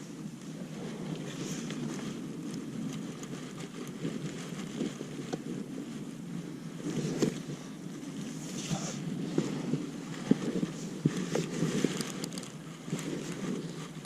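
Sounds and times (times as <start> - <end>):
small clicks and crackles: 0.0 - 14.0
wind buffeting microphone: 0.0 - 14.0.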